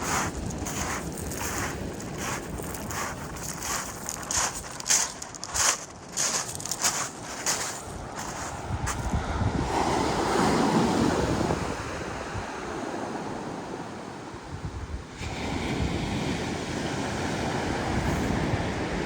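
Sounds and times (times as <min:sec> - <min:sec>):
wind buffeting microphone: 0:00.0 - 0:10.4
sea waves breaking on beach: 0:00.0 - 0:13.9.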